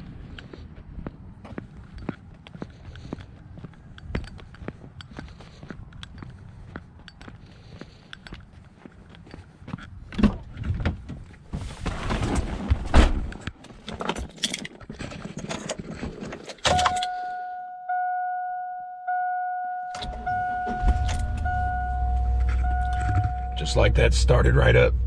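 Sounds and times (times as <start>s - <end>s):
truck warning chime: 16.7s - 25.0s.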